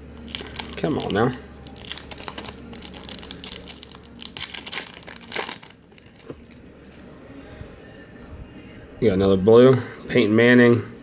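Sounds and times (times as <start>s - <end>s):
foil wrapper crinkling: 0.3s - 6.6s.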